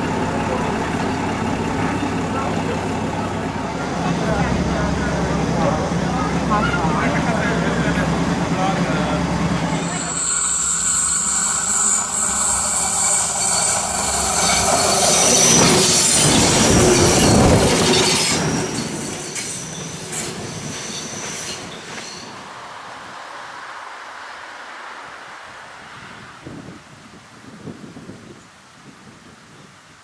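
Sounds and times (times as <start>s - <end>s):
wheels squealing on rails: 0.0s - 22.6s
railbus running on track: 0.0s - 29.4s.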